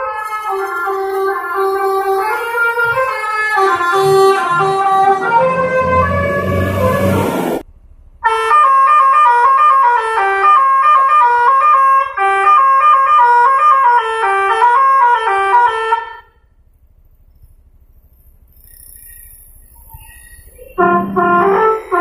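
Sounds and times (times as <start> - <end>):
bus horn playing melody: 0.0 - 7.6, 8.2 - 16.5, 20.7 - 22.0.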